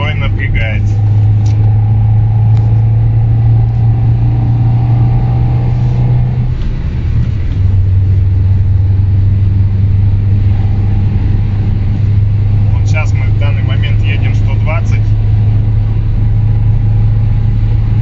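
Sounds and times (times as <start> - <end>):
exhaust droning inside car cabin: 0.0 - 18.0.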